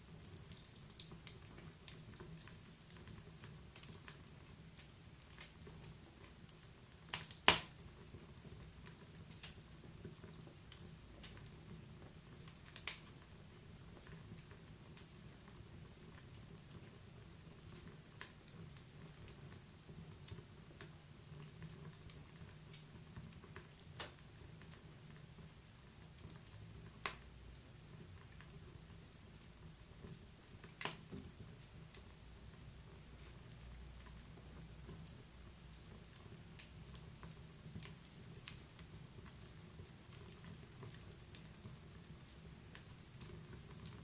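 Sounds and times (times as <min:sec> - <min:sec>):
wood fire crackling in stove: 0:00.0 - 0:44.0.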